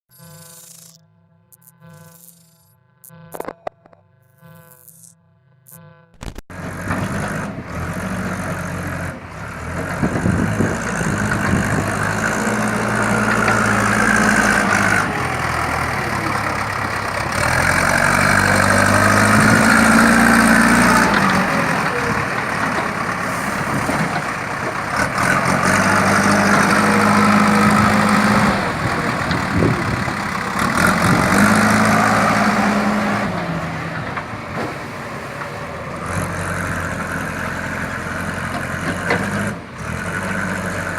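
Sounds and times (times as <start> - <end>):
diesel engine revving under load: 6.5 - 40.9.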